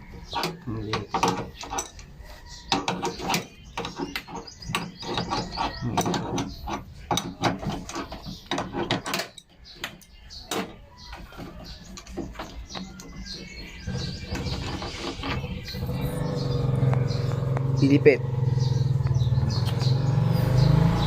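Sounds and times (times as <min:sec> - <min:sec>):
handling clicks and knocks: 0:00.0 - 0:15.7.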